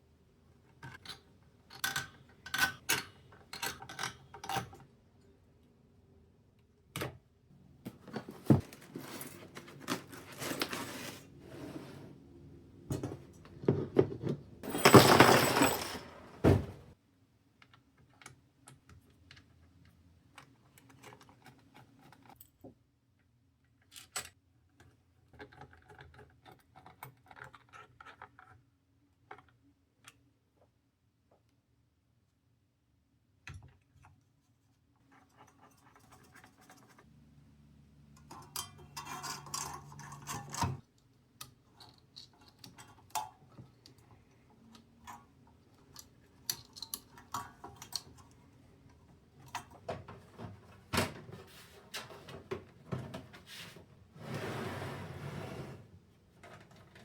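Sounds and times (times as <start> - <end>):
hands handling computer parts: 7.8 - 11.4, 12.9 - 17.0.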